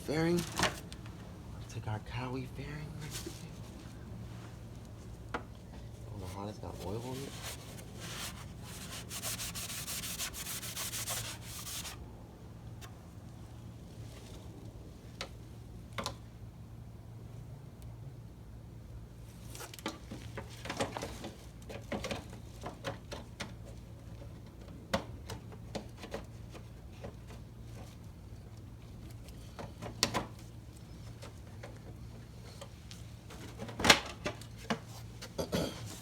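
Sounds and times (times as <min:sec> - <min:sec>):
steady low hum: 0:00.0 - 0:19.4.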